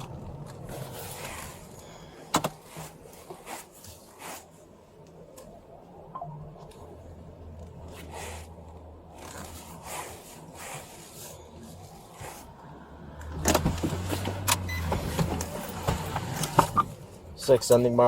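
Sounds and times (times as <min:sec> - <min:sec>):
car engine running: 0:00.0 - 0:04.1, 0:04.8 - 0:18.0
clothing rustling against camera: 0:00.0 - 0:05.6, 0:06.6 - 0:12.7.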